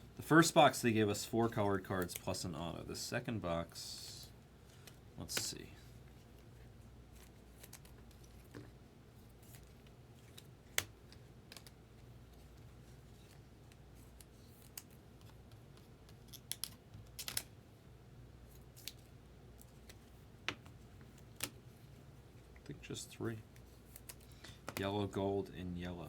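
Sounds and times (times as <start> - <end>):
faint steady hum: 0.0 - 26.0
trading cards clicking and rustling: 1.5 - 2.4, 9.4 - 17.5, 23.5 - 25.0.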